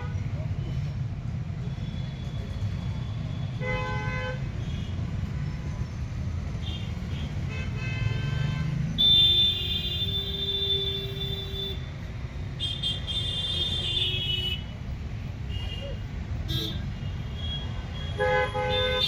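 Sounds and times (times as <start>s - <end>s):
traffic engine rumble: 0.0s - 19.0s
vehicle horns honking: 6.6s - 11.8s, 15.5s - 19.0s.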